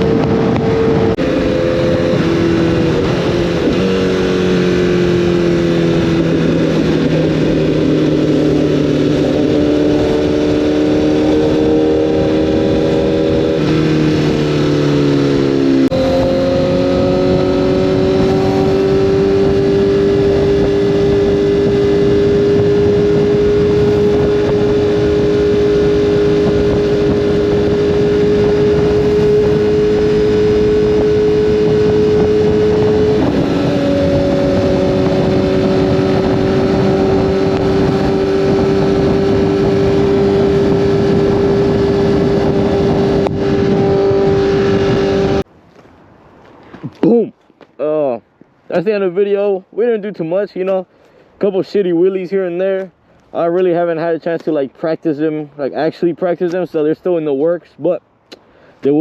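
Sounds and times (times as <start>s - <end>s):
motorcycle engine running: 0.0s - 45.5s.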